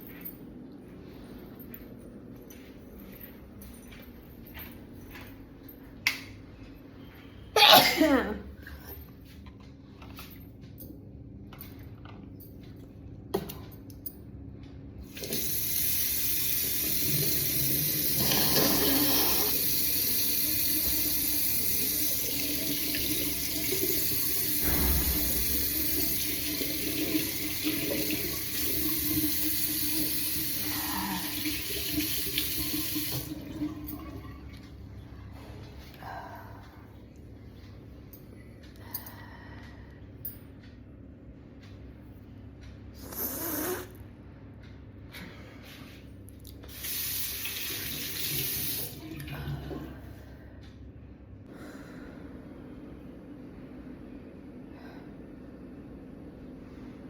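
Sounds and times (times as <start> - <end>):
water running from a tap: 15.1 - 34.4, 46.7 - 49.3.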